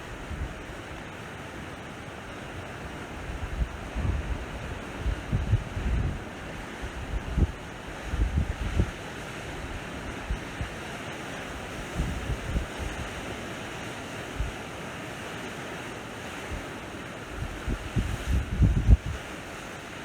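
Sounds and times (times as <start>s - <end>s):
sea waves washing on shore: 0.0s - 20.0s
wind buffeting microphone: 3.1s - 10.8s, 11.7s - 13.1s, 17.3s - 19.5s.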